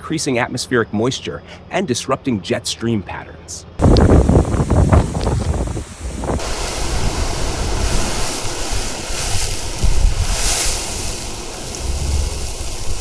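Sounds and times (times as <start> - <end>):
wind buffeting microphone: 3.8 - 13.0.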